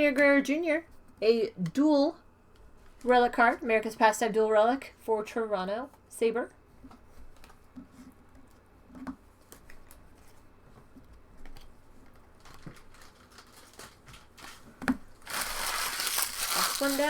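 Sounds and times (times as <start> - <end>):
foil wrapper crinkling: 11.6 - 17.0.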